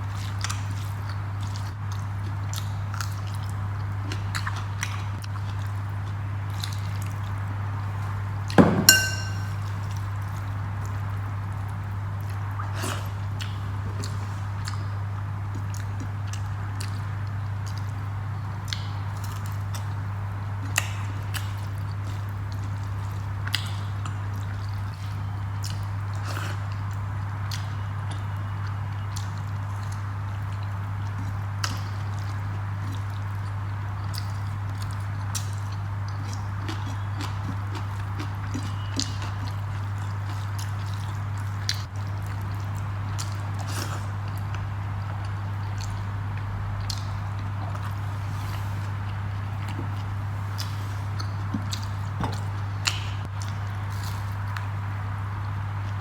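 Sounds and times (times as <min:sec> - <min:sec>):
chewing food: 0:00.0 - 0:56.0
steady low hum: 0:01.6 - 0:26.1.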